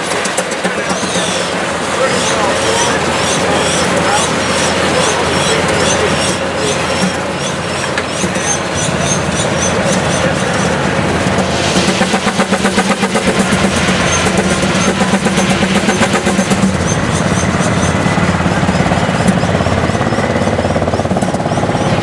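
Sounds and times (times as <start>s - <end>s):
steam engine exhaust chuffing: 0.0s - 22.0s.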